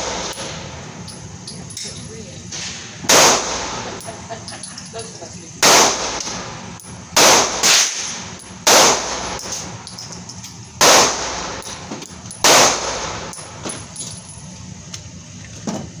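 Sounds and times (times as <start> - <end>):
pistol shots: 2.6 - 4.1, 5.6 - 9.9, 10.8 - 11.8, 12.4 - 13.4.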